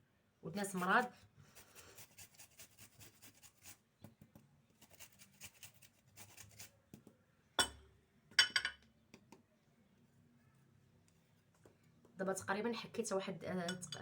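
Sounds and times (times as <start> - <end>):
ginger rasping on a grater: 0.7 - 3.8, 4.8 - 6.7.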